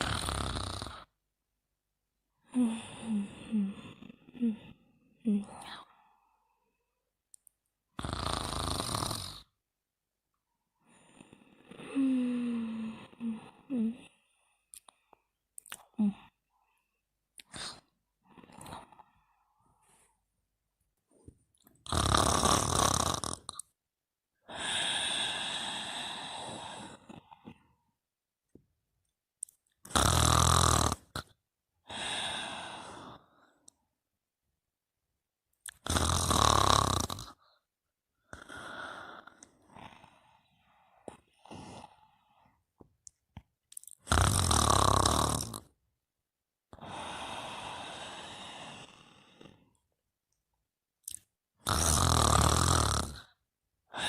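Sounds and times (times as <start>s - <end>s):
person snoring: 0.0s - 1.2s, 2.4s - 6.0s, 8.0s - 9.6s, 10.8s - 14.4s, 21.8s - 23.6s, 24.4s - 27.7s, 29.8s - 33.6s, 35.6s - 37.6s, 38.3s - 42.5s, 43.8s - 45.8s, 46.7s - 49.8s, 51.6s - 54.0s
noisy sleeping breaths: 24.5s - 27.7s, 31.9s - 33.6s, 46.8s - 49.8s.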